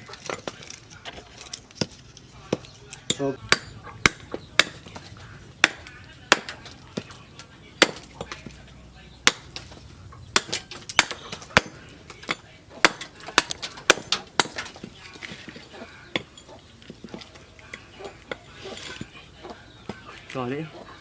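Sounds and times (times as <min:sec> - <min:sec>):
hand tool knocking and clinking: 0:09.2 - 0:14.9.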